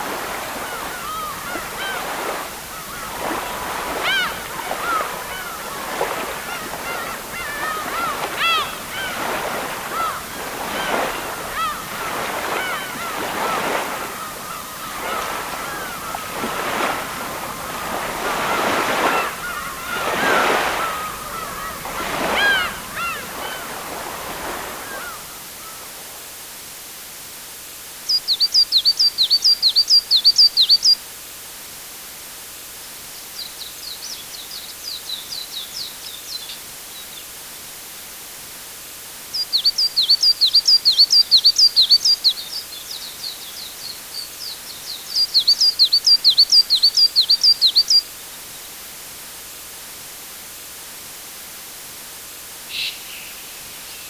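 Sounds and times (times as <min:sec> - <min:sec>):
waterbirds calling: 0:00.0 - 0:26.1, 0:28.1 - 0:31.0, 0:39.3 - 0:48.8, 0:52.5 - 0:54.0
water washing in waves: 0:00.0 - 0:26.2
songbird high chirps: 0:28.1 - 0:31.0, 0:39.3 - 0:48.1, 0:52.7 - 0:54.0.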